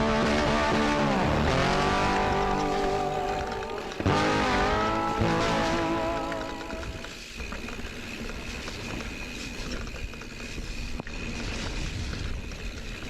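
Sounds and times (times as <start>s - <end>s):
bike freewheel buzzing: 0.0s - 13.0s
bike tyres rumbling over dirt: 0.0s - 13.0s.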